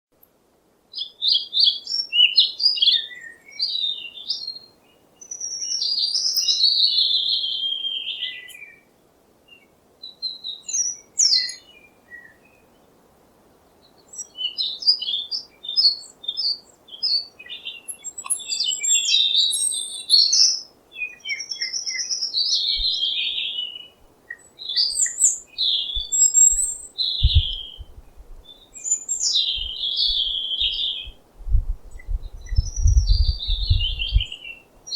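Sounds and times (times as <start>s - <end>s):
songbird singing: 0.9s - 34.9s
low thumps: 27.2s - 28.4s, 31.1s - 34.4s.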